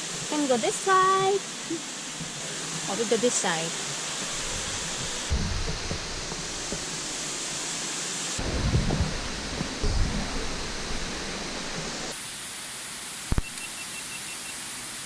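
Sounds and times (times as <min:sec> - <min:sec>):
water rushing over rocks: 0:00.0 - 0:13.6
thumps on microphone: 0:05.2 - 0:06.1.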